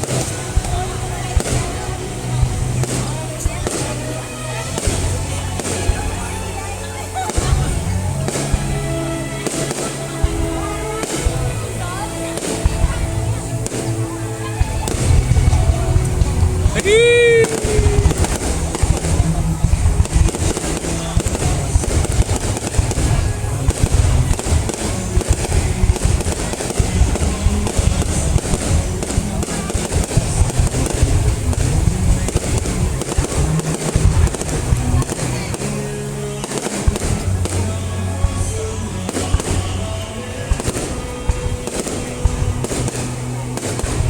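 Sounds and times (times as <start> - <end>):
background music: 0.0 - 44.0
deep fireworks booms: 0.0 - 44.0
fireworks bursts and crackles: 0.0 - 44.0.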